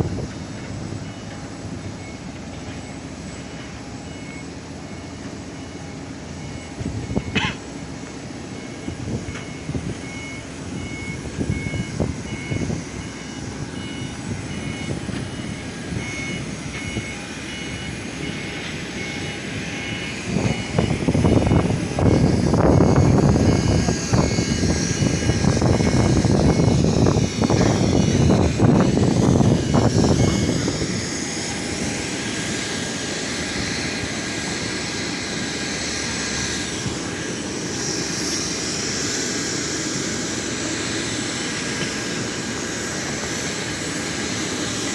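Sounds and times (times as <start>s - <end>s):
machinery rumble: 0.0s - 44.9s
two-tone electronic beep: 6.4s - 7.6s.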